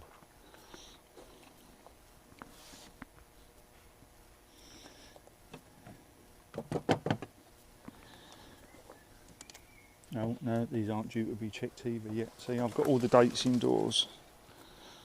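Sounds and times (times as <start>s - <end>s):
sharp knocks and clatter: 6.5s - 7.3s
faint clicks: 9.3s - 10.2s.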